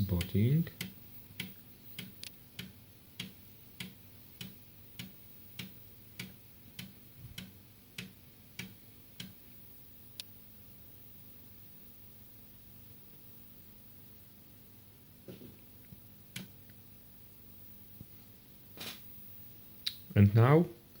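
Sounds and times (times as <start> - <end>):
floppy drive ticking: 0.0 - 9.4.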